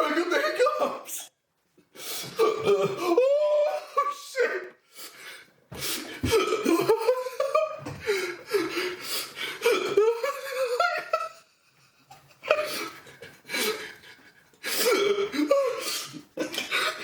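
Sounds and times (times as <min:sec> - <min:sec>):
man laughing: 0:06.2 - 0:08.8, 0:09.6 - 0:14.2.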